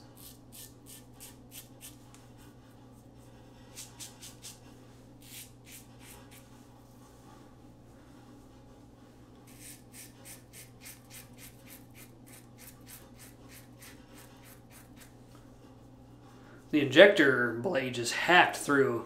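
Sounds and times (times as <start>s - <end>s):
razor scraping stubble: 0.1s - 2.3s, 5.2s - 6.5s, 9.5s - 15.2s.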